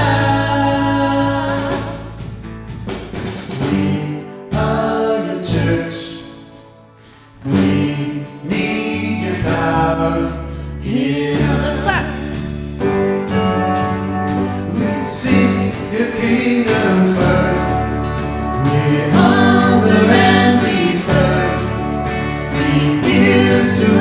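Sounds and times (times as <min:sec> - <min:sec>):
people singing: 0:00.0 - 0:02.2, 0:03.6 - 0:06.4, 0:07.4 - 0:12.5, 0:14.7 - 0:24.0
worship band playing: 0:00.0 - 0:24.0.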